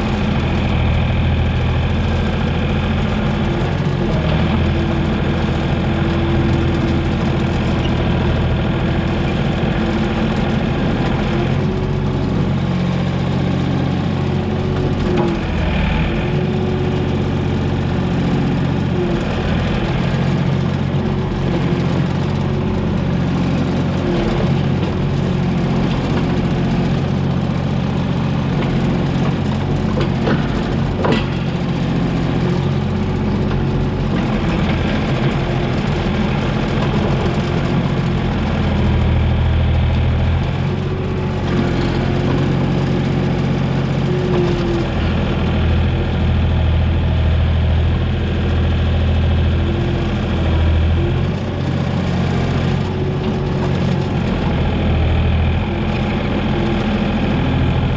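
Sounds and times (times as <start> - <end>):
excavator diesel engine running: 0.0 - 57.9.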